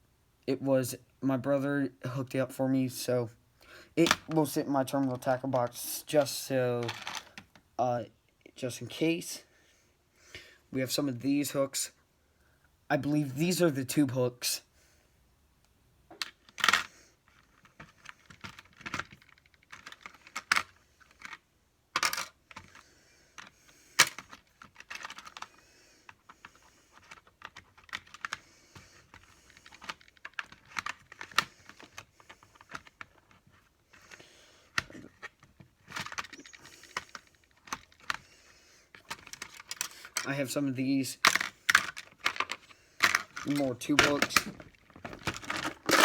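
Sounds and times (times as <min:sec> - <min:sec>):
plastic and metal clicks and rattles: 0:16.1 - 0:38.3, 0:38.9 - 0:40.3, 0:41.2 - 0:46.0.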